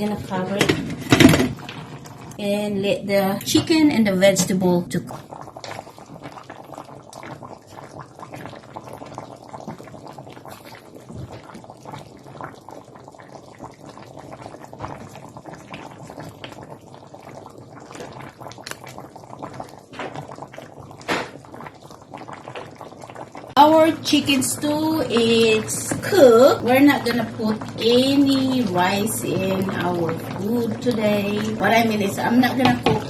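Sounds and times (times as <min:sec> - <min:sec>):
stew bubbling in a pot: 0:00.0 - 0:33.0.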